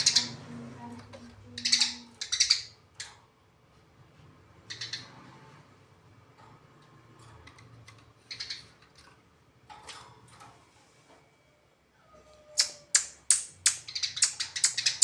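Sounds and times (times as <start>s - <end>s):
sparrows chirping: 0.0s - 3.1s, 4.6s - 5.4s, 7.4s - 9.1s, 12.6s - 15.0s.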